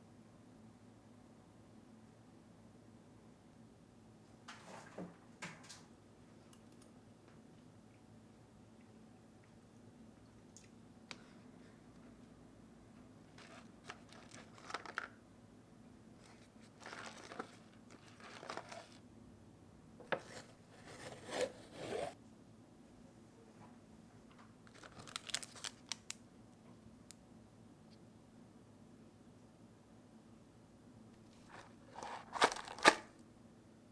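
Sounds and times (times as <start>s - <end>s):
faint steady hum: 0.0s - 33.9s
plastic packaging tearing and crinkling: 13.4s - 15.1s, 16.8s - 19.0s, 24.7s - 26.2s, 31.5s - 33.1s.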